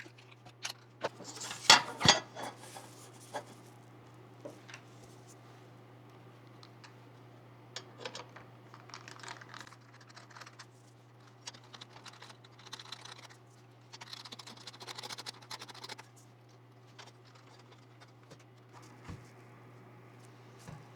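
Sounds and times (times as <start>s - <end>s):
steady low hum: 0.0s - 20.9s
small clicks and scratches: 8.0s - 19.4s.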